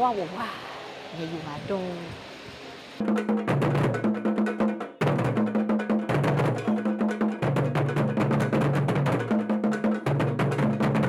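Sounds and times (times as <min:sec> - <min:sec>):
clicking percussion beat: 0:03.0 - 0:11.0.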